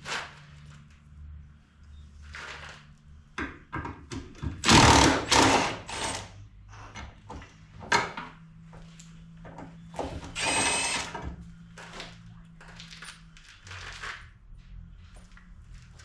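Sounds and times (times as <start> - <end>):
impact wrench bursts: 4.6 - 6.3, 10.3 - 11.2.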